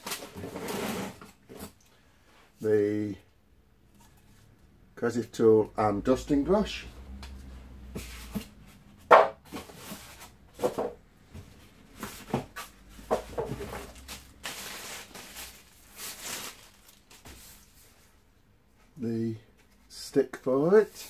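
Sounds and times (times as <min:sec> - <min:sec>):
packaging rustling: 0:12.1 - 0:17.8
plastic parts knocking: 0:12.3 - 0:14.1.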